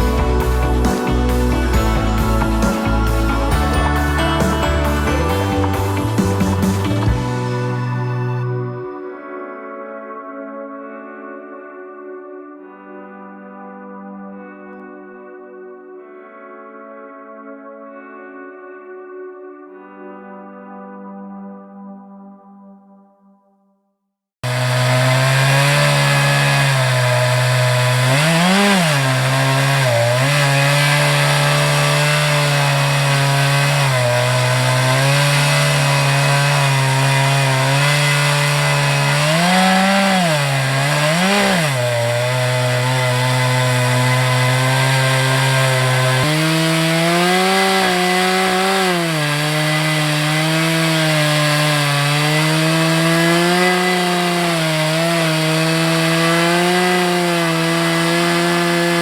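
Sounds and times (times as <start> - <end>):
chainsaw ripping a log: 0.0 - 7.1, 24.4 - 59.0.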